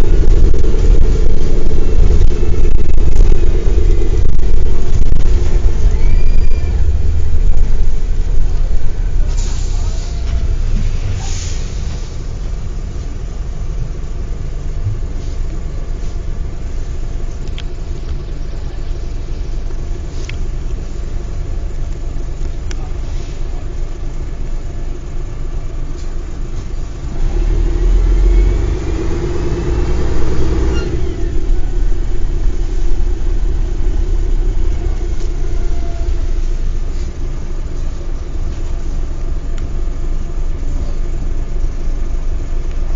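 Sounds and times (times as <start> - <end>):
engine whine accelerating: 0.0 - 13.0, 26.8 - 40.6
bus diesel engine rumbling: 0.0 - 42.9.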